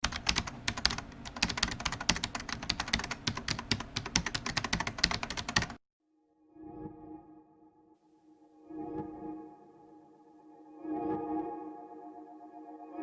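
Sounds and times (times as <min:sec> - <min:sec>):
rapid irregular clicking: 0:00.0 - 0:05.8
soft sustained music: 0:06.0 - 0:13.0.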